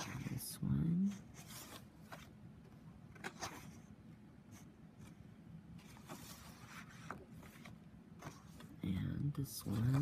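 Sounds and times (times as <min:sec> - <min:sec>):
low room hum: 0:00.0 - 0:10.0
paper rustling and sliding: 0:01.1 - 0:02.4, 0:05.8 - 0:08.8.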